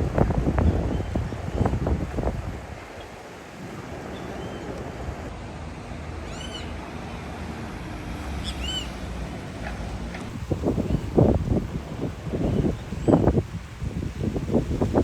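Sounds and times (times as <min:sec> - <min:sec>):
sea surf: 0:00.0 - 0:15.0
wind: 0:00.0 - 0:15.0
animal calls: 0:08.3 - 0:09.1.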